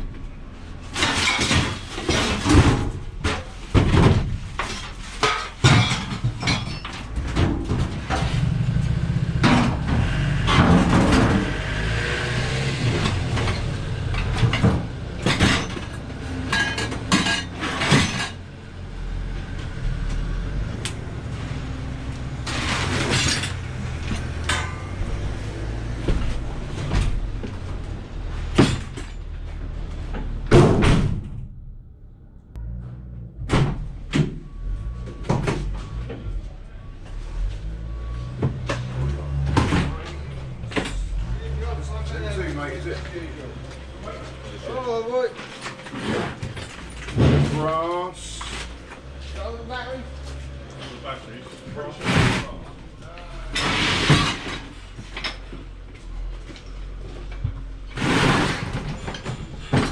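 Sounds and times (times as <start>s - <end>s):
low engine rumble: 0.0s - 59.9s
scrap metal clanking: 0.7s - 11.6s, 12.8s - 18.5s, 22.1s - 26.9s, 45.3s - 49.4s, 50.3s - 55.8s, 56.9s - 59.9s.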